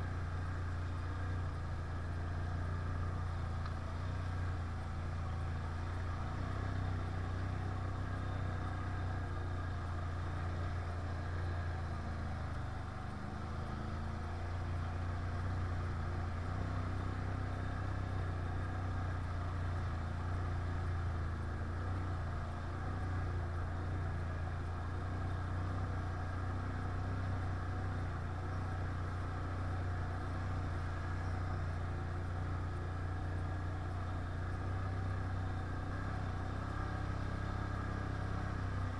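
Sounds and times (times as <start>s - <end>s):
quad engine droning: 0.0s - 38.9s.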